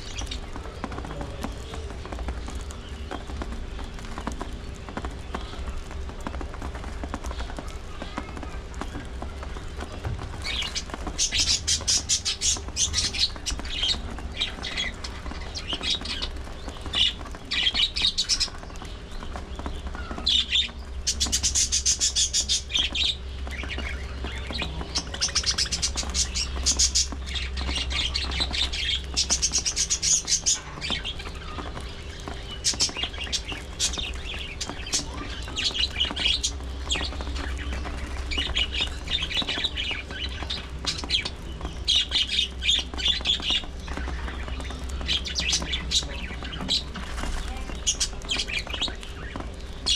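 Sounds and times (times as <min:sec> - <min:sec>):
budgies chattering: 0:00.0 - 0:49.9
steady low hum: 0:00.0 - 0:49.9.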